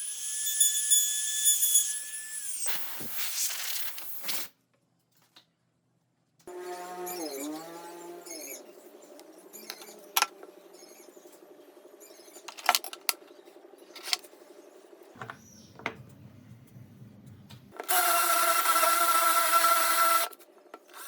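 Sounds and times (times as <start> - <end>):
power tool motor winding down: 17.8 - 20.4.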